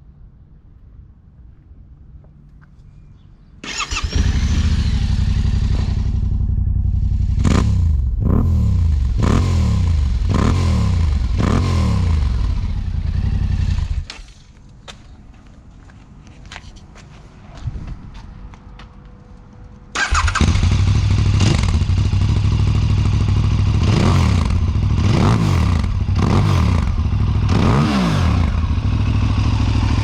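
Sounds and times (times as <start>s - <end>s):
motorcycle engine revving: 3.7s - 14.1s, 20.0s - 30.0s.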